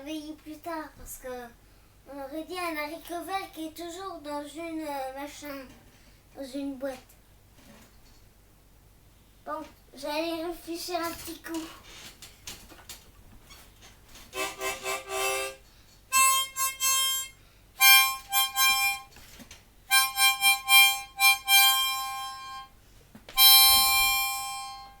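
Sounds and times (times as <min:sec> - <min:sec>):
wind instrument playing held notes: 0:14.3 - 0:19.1, 0:19.9 - 0:22.8, 0:23.4 - 0:25.0.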